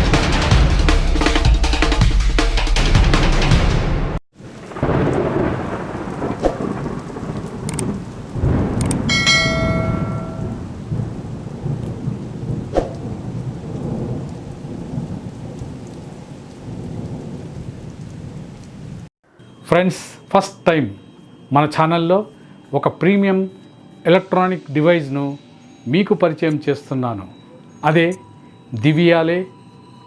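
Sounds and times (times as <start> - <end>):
rain: 4.3 - 19.1
rolling thunder: 4.4 - 19.1
sharp click: 8.8 - 9.0
bell-like chime: 9.1 - 10.7.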